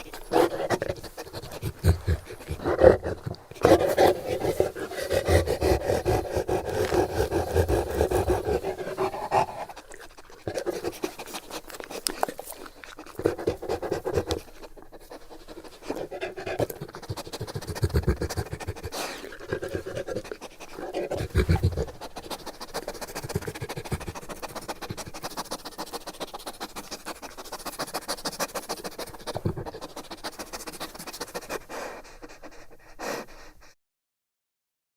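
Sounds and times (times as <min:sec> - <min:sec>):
dog panting: 0:00.0 - 0:33.8.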